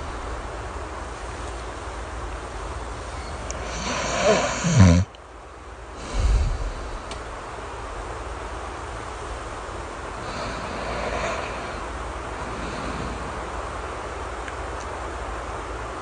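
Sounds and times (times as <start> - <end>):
soft snoring: 3.5 - 5.1, 10.2 - 13.5.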